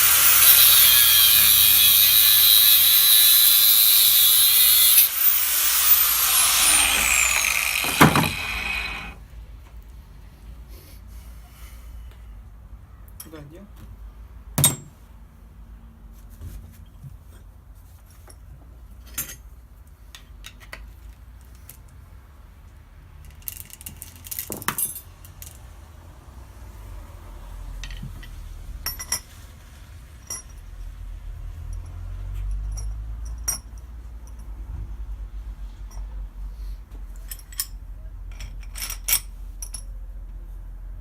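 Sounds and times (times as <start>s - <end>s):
light metallic clinks and knocks: 31.6s - 34.6s, 37.1s - 40.0s.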